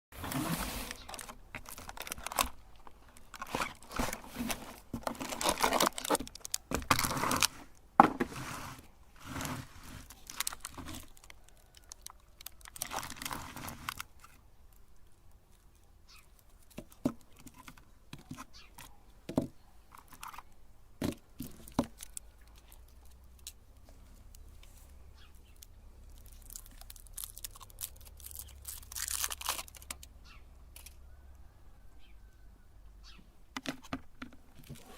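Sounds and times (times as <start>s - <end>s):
foil wrapper crinkling and tearing: 0.4s - 7.6s, 10.0s - 14.4s, 25.4s - 30.1s.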